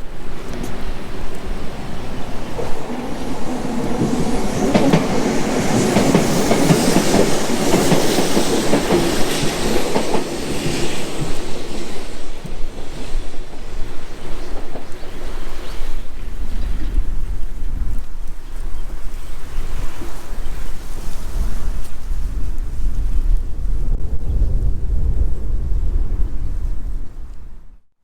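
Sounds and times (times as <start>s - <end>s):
train wheels clattering: 0.0s - 16.2s.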